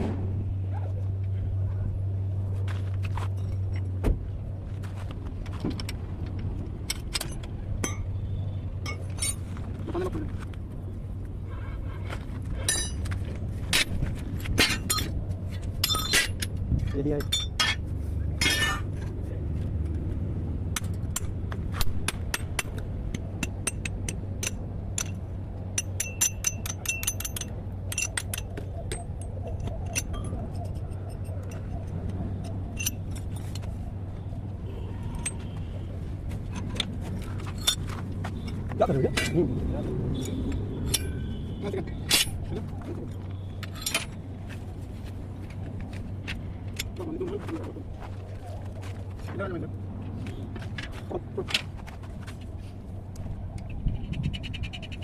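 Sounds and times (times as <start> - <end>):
steady low hum: 0.0 - 55.0
metallic clanks of steel: 8.8 - 9.5, 12.6 - 17.8, 18.4 - 19.2, 20.7 - 33.7, 36.4 - 39.5, 40.2 - 41.4, 42.0 - 42.6, 43.6 - 44.2
light metallic clinks: 23.4 - 33.7.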